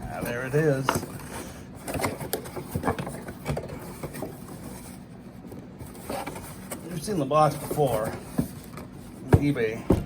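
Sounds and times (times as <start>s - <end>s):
cardboard packaging rustling: 0.1s - 9.6s.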